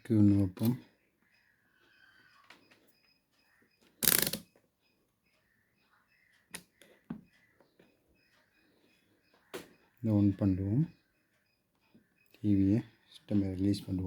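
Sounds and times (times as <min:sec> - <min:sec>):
sharp clicks: 0:03.8 - 0:04.6.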